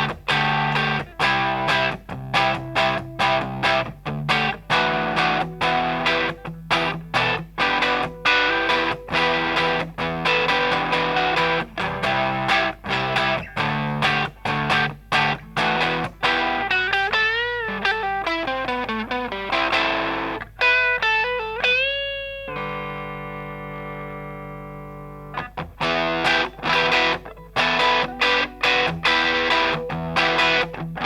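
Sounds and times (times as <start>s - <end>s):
overdriven electric guitar chords: 0.0s - 31.0s
guitar note bent with vibrato: 19.1s - 30.9s.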